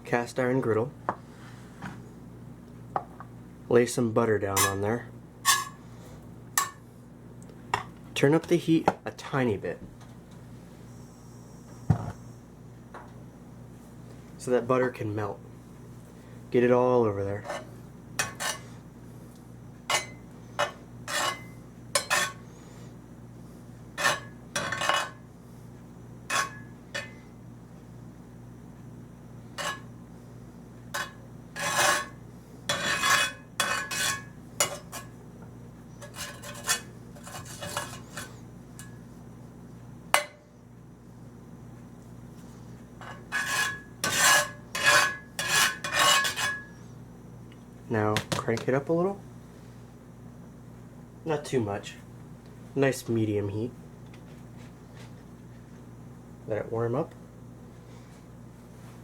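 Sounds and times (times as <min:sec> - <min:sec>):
metal utensil scraping on griddle: 0:05.4 - 0:05.8, 0:21.1 - 0:22.4, 0:31.0 - 0:35.1, 0:36.0 - 0:38.4, 0:43.0 - 0:46.7.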